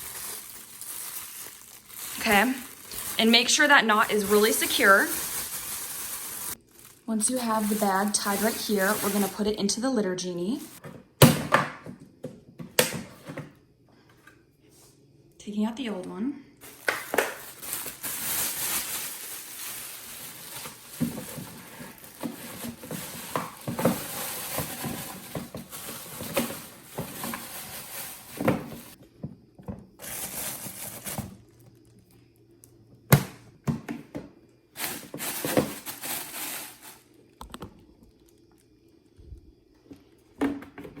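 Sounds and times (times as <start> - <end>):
plastic bag crinkling: 0.0 - 9.8, 10.4 - 10.8, 16.6 - 29.0, 30.0 - 32.2, 34.8 - 38.7.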